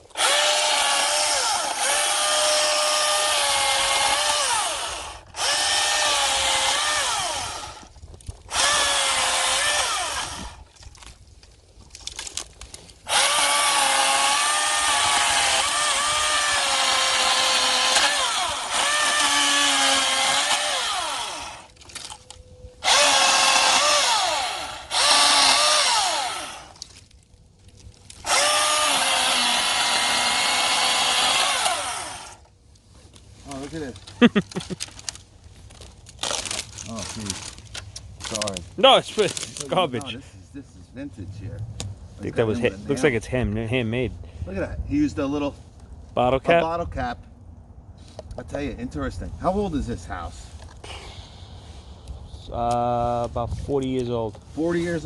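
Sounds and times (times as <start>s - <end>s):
battery chainsaw cutting wood: 0.1s - 7.9s, 8.5s - 10.6s, 13.0s - 21.7s, 22.8s - 26.9s, 28.2s - 32.4s.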